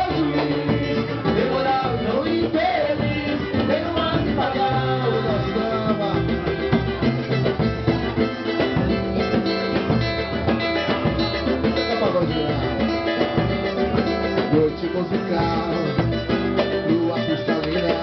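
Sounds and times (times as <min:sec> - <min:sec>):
percussion: 0:00.0 - 0:18.0
plucked strings: 0:00.0 - 0:18.0.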